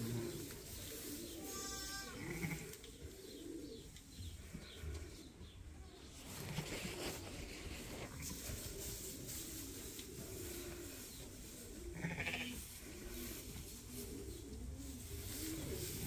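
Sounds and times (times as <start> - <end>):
sheep bleating: 1.4 - 2.7, 12.0 - 12.6.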